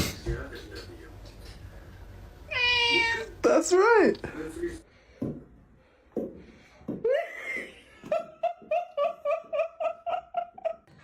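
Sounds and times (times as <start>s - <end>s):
person laughing: 7.0s - 10.9s.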